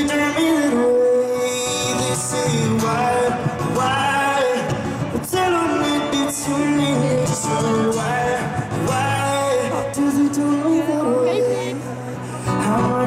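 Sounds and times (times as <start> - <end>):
live pop song with singing: 0.0 - 13.0.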